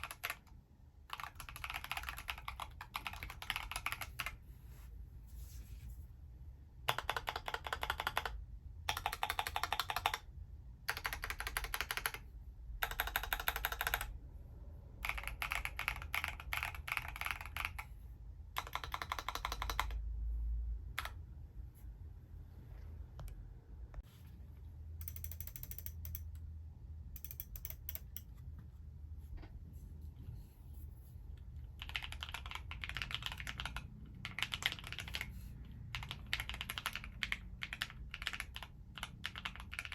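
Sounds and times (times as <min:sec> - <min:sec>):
mechanical keyboard typing: 0:00.0 - 0:04.4, 0:06.8 - 0:14.2, 0:15.0 - 0:17.9, 0:18.5 - 0:20.0, 0:20.9 - 0:21.2, 0:25.0 - 0:26.4, 0:27.1 - 0:28.3, 0:31.6 - 0:39.9.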